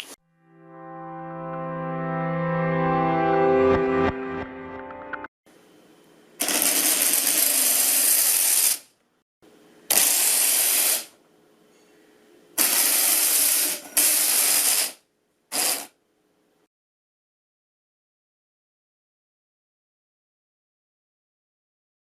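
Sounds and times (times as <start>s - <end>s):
hissing bursts: 6.4s - 8.9s, 9.9s - 11.2s, 12.6s - 15.9s.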